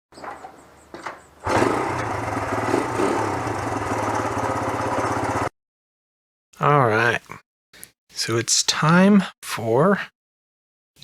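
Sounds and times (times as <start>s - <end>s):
engine running: 1.4s - 5.5s.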